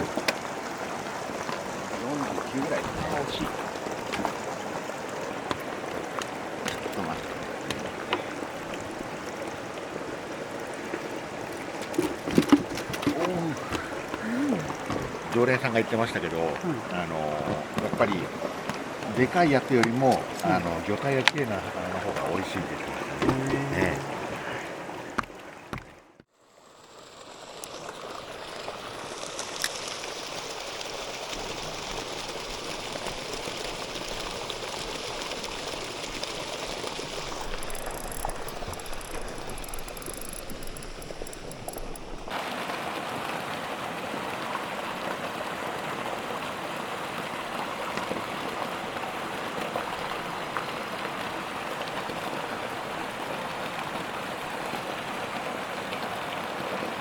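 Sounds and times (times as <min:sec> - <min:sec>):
running water hissing: 0:00.0 - 0:43.4.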